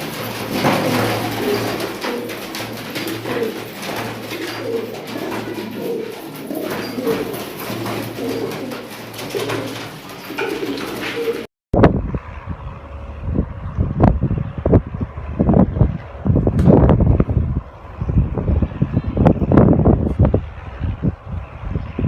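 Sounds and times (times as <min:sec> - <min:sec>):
pigeons cooing: 0:00.0 - 0:11.5
steady low hum: 0:11.8 - 0:22.0.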